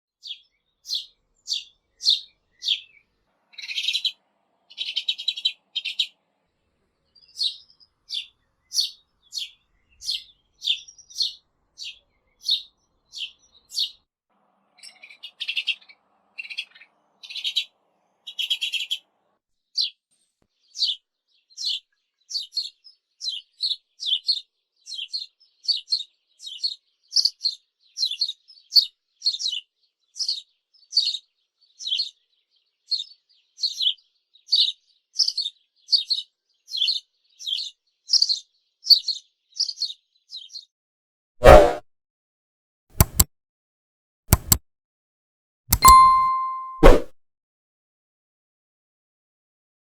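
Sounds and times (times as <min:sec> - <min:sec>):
sparrow chirping: 0:00.2 - 0:06.2, 0:07.1 - 0:14.0, 0:14.8 - 0:19.1, 0:19.8 - 0:20.0, 0:20.6 - 0:40.7.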